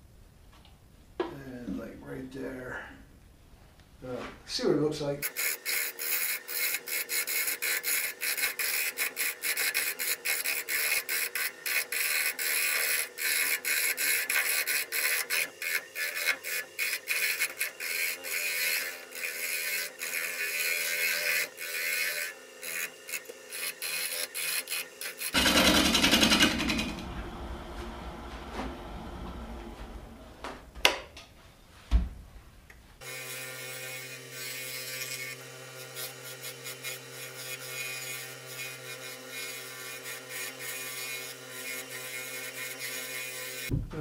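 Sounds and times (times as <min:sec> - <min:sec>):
lathe gouge scraping wood: 0:05.2 - 0:30.2, 0:33.0 - 0:43.7
louder rumble: 0:25.4 - 0:30.4
low steady hum: 0:26.5 - 0:31.4.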